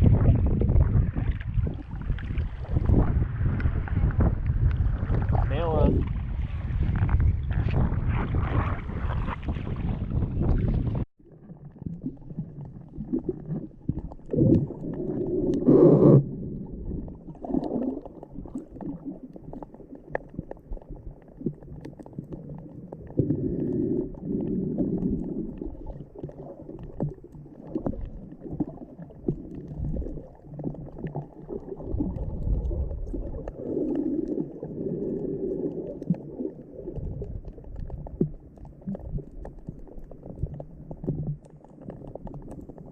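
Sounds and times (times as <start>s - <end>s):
wind noise: 0.0s - 11.1s
underwater gurgling and sloshing: 0.0s - 42.9s.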